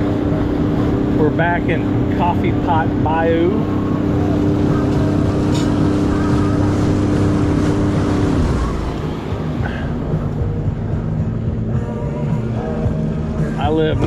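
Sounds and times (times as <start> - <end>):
jet ski engine running: 0.0 - 14.0.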